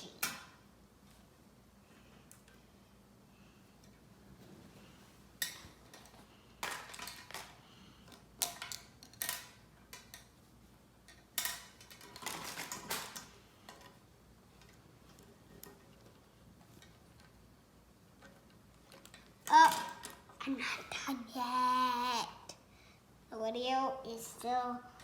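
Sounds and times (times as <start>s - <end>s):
small objects clattering on table: 5.4s - 7.6s, 8.4s - 10.3s, 11.1s - 14.0s.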